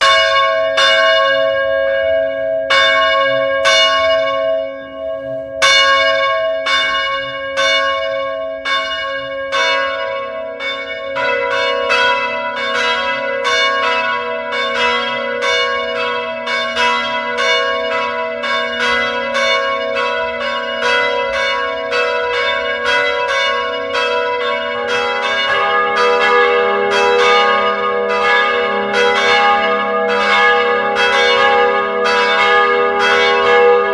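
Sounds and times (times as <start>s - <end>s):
church bells ringing: 0.0s - 33.9s.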